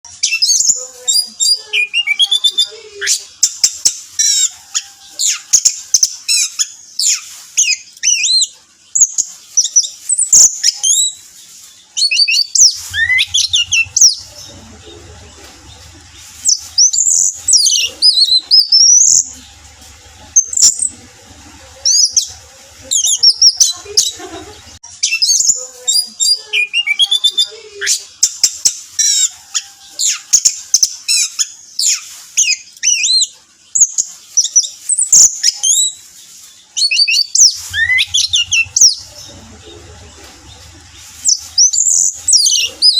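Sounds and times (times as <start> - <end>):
thrush singing: 12.4 - 24.8.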